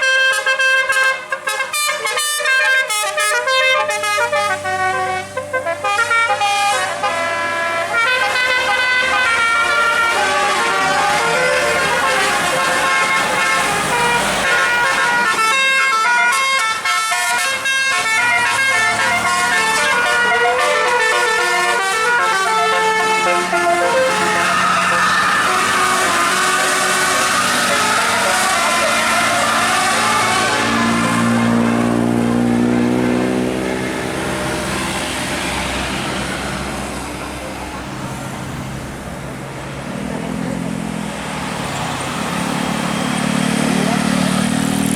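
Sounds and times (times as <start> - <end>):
bus musical horn melody: 0.0 - 36.4
bus engine driving past: 17.3 - 44.9.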